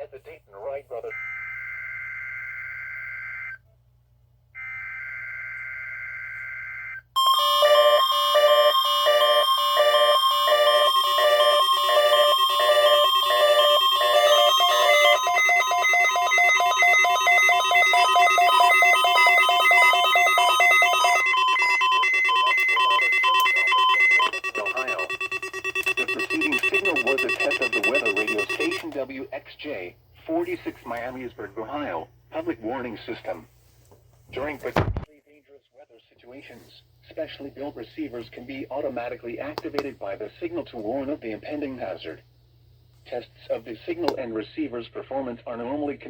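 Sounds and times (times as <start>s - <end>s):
electronic alarm beeps: 4.6s - 29.0s
screeching digital header tones: 7.2s - 29.0s.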